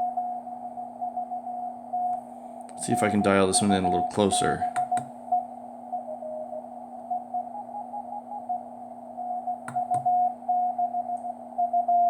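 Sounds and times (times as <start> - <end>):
steady low hum: 0.0 - 12.0
sharp clicks: 9.7 - 10.1
morse code beeps: 9.7 - 10.3.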